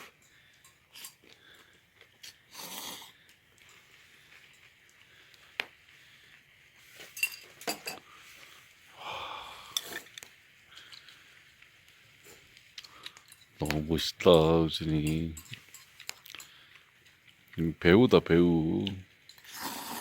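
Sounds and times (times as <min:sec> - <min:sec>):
utensils clinking against frying pan: 0:06.9 - 0:08.1, 0:14.9 - 0:16.7.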